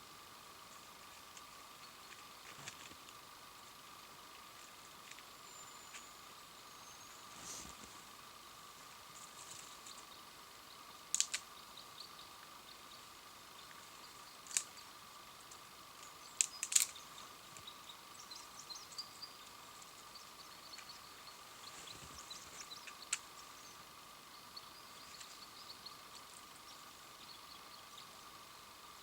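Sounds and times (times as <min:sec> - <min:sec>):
faint steady hum: 0:00.0 - 0:29.0
sharp snaps and clicks: 0:11.1 - 0:11.5, 0:14.4 - 0:14.7, 0:15.5 - 0:17.0, 0:22.6 - 0:23.3.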